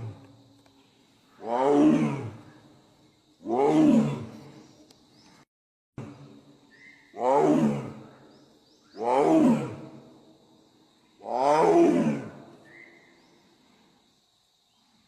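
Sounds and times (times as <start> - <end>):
tiger roaring: 1.4 - 2.4, 3.4 - 4.4, 7.1 - 8.1, 9.0 - 10.0, 11.2 - 12.4.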